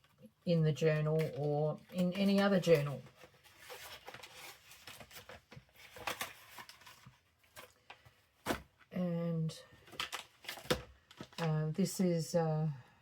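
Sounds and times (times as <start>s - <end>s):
paper rustling: 1.2s - 8.8s.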